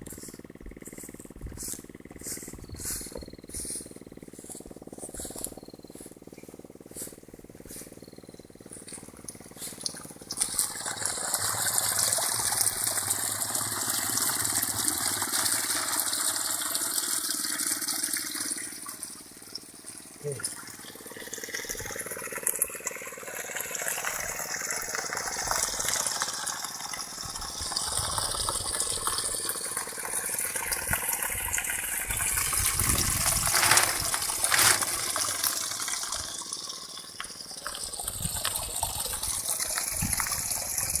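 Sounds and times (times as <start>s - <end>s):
pumped water gushing: 8.5s - 41.0s.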